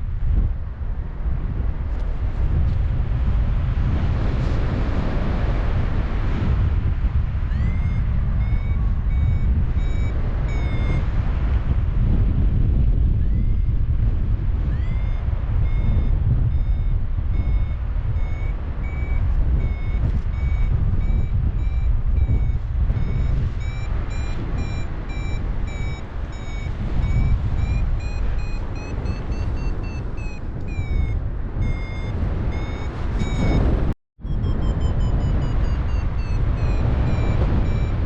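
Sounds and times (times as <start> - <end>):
wind rushing on microphone: 0.0 - 38.0
variometer beeping: 7.5 - 11.4, 13.1 - 13.9, 14.6 - 38.0.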